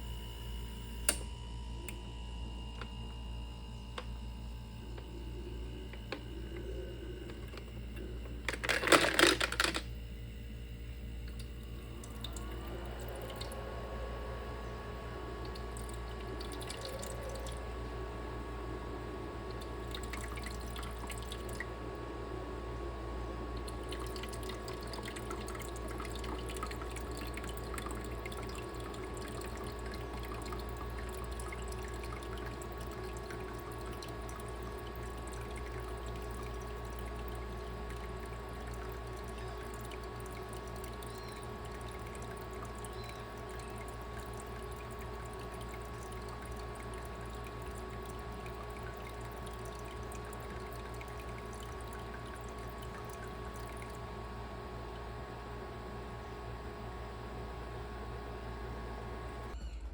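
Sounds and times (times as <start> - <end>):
ice maker humming: 0.0 - 59.9
water trickling and dripping: 11.2 - 17.9, 19.4 - 21.7, 23.6 - 54.6.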